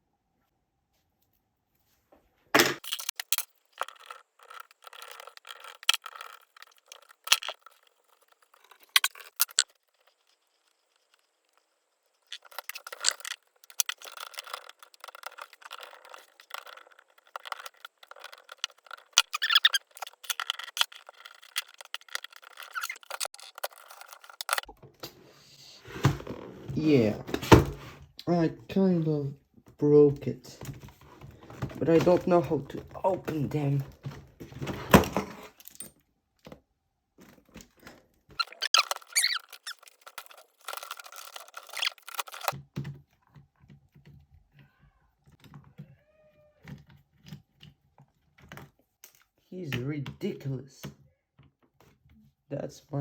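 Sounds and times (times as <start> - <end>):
tools clicking on plastic parts: 2.6 - 11.2, 12.3 - 24.7, 38.4 - 44.2.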